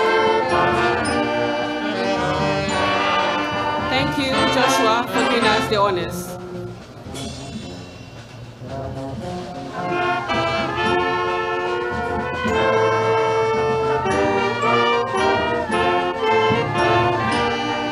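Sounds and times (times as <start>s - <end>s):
brass band playing slow tune: 0.0s - 17.9s.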